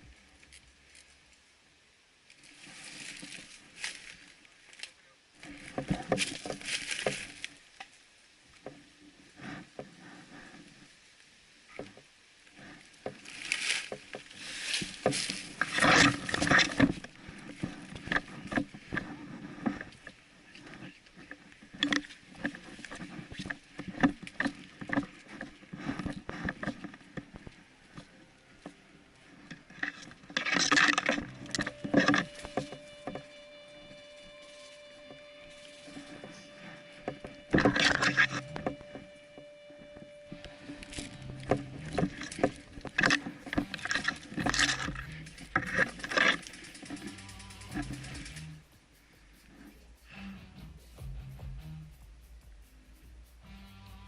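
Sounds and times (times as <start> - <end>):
rustling through dry brush: 2.2 - 54.0
footsteps crunching leaves and twigs: 2.4 - 7.8, 12.9 - 54.0
sharp clicks and cracks: 40.4 - 50.5.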